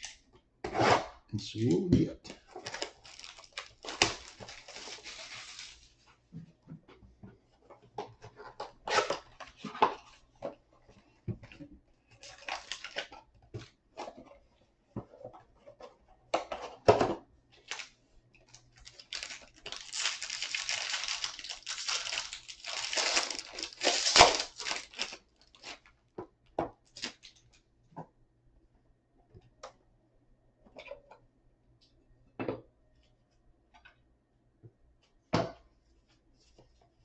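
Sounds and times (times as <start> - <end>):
wrapper crinkling and tearing: 2.5 - 6.0, 12.2 - 13.1, 17.6 - 17.9, 18.5 - 25.9, 26.9 - 27.4.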